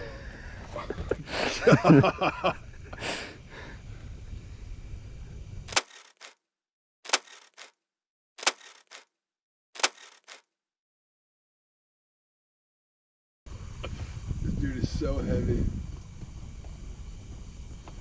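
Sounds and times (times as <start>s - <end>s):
camera shutter double clicks: 5.7s - 6.4s, 7.1s - 7.7s, 8.4s - 9.0s, 9.8s - 10.4s.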